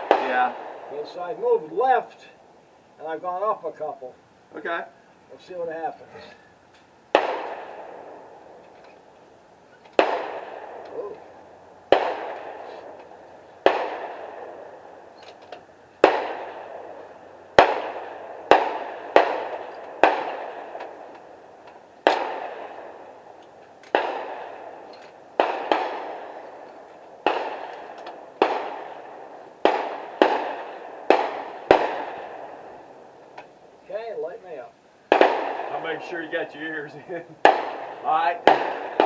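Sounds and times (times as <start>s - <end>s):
gunshots echoing: 0.0s - 2.0s, 7.1s - 8.7s, 9.9s - 15.2s, 16.0s - 33.4s, 35.1s - 39.0s.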